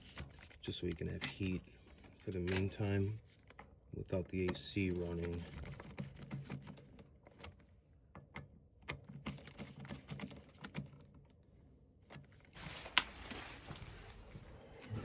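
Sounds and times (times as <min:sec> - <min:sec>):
small clicks and taps on wiring: 0:00.0 - 0:03.8, 0:04.4 - 0:11.4
brief rustle: 0:12.6 - 0:15.0.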